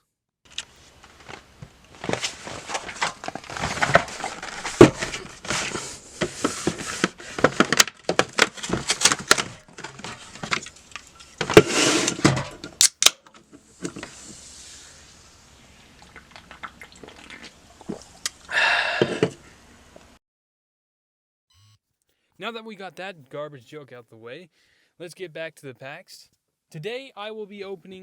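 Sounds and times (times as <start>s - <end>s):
rustling and crinkling: 0.5s - 18.4s.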